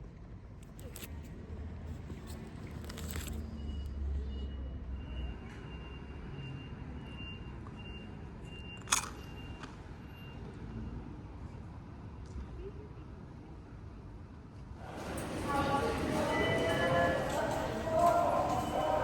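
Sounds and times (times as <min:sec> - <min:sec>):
traffic rumble: 0:14.8 - 0:19.0.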